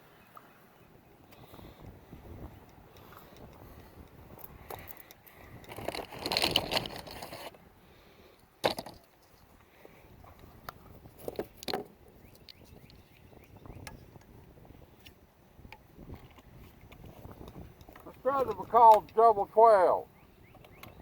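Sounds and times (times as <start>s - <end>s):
rustling scrape: 5.7s - 7.6s.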